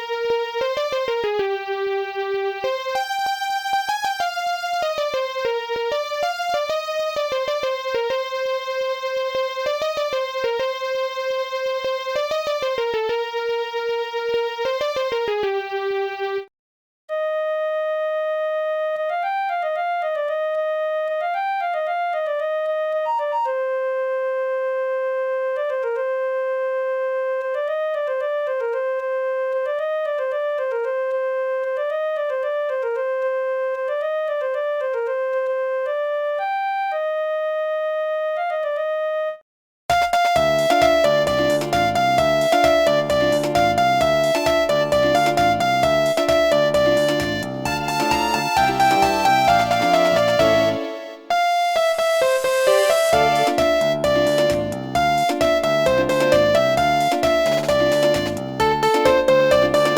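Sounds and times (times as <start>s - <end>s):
electronic ringtone melody: 36.4s - 59.9s
synth-like ringtone melody: 38.3s - 59.9s
ticking beat: 39.9s - 59.9s.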